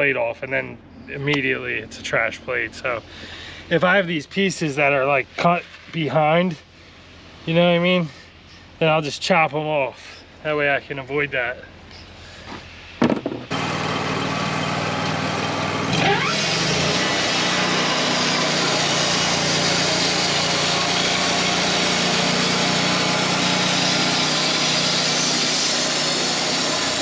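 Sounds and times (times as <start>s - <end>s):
bandsaw mill engine running: 13.5s - 27.0s.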